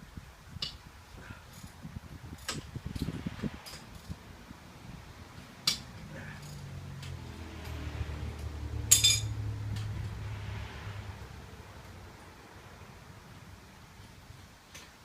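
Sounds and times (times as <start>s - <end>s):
metal hand tools clinking: 8.9s - 9.3s.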